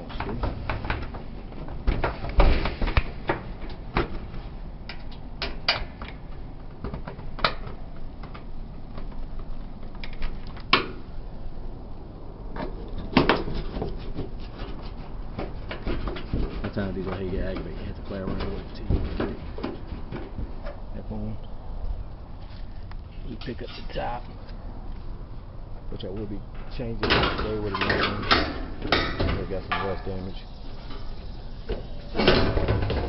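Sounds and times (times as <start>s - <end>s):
dryer parts clicking and knocking: 26.1s - 30.2s.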